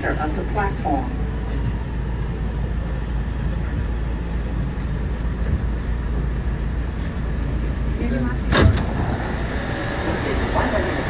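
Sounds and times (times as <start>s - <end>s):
subway car rumble and hum: 0.0s - 11.0s.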